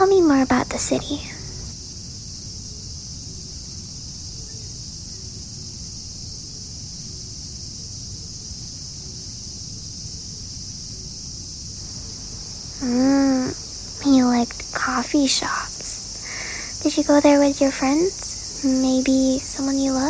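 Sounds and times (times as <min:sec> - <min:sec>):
low outdoor rumble: 0:00.0 - 0:01.8, 0:11.7 - 0:20.0
cicadas droning: 0:00.0 - 0:20.0.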